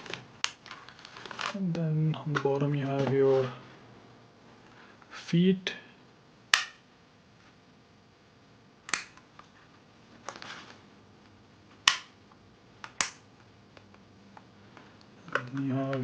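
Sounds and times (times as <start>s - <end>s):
sharp plastic clicks: 6.5s - 6.8s, 8.9s - 9.3s, 12.8s - 14.0s.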